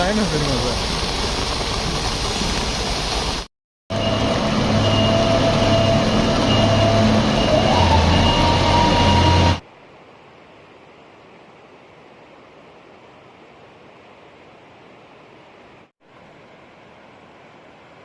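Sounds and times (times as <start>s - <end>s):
heavy vehicle engine running: 3.9s - 9.6s.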